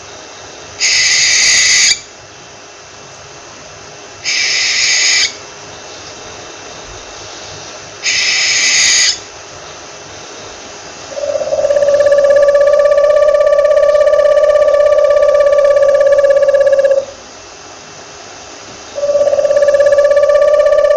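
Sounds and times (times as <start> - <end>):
owl calling: 0.8 - 2.1, 4.2 - 5.4, 8.0 - 9.3, 11.1 - 17.2, 19.0 - 20.9
fluttering pitched tone: 11.1 - 17.1, 19.0 - 20.9.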